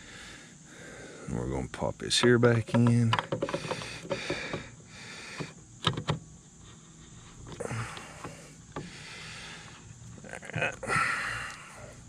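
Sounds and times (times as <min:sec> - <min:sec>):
hard plastic clicking and scraping: 0:02.2 - 0:04.7, 0:05.3 - 0:06.2.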